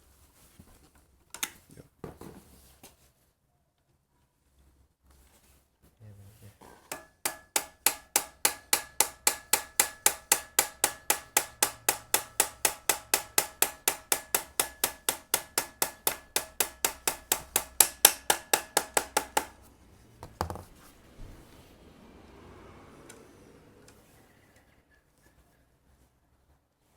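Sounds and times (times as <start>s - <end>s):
hammer tapping on metal: 6.9s - 20.7s.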